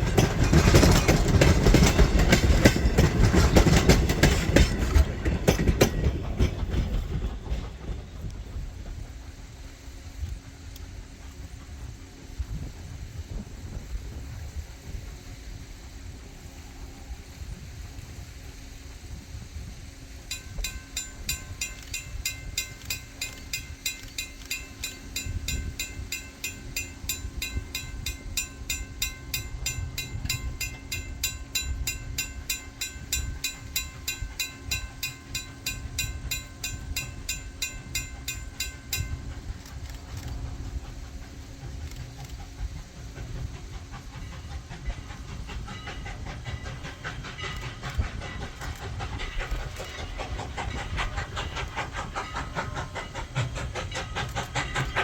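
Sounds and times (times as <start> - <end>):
wheel clatter: 0.0 - 8.1
steam locomotive hissing steam: 0.0 - 55.0.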